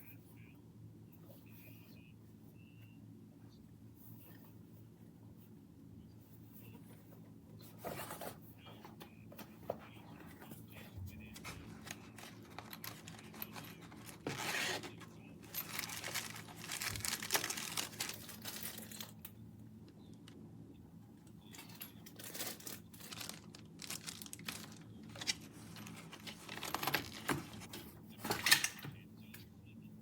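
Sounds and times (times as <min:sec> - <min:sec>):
packaging crinkling and tearing: 0:11.8 - 0:19.1, 0:22.2 - 0:27.3.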